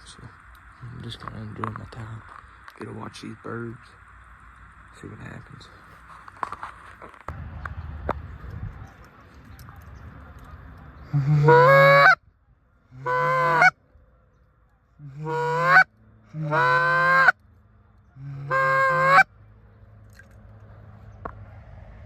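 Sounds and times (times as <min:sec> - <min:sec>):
goose call honking: 0:11.1 - 0:12.2, 0:12.9 - 0:13.8, 0:15.0 - 0:17.4, 0:18.2 - 0:19.3.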